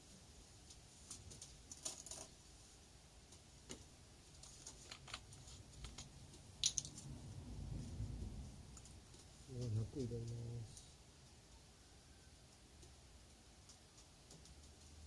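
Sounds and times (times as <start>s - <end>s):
small parts clicking and tapping: 0.6s - 2.4s, 3.3s - 7.1s, 12.8s - 15.0s.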